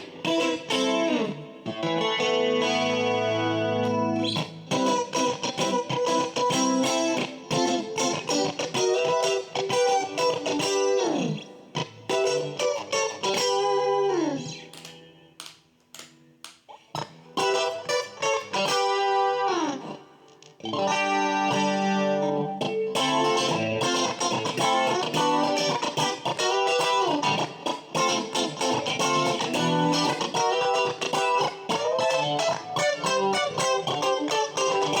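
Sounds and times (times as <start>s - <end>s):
clean electric guitar playing: 0.0s - 15.4s, 17.0s - 35.0s.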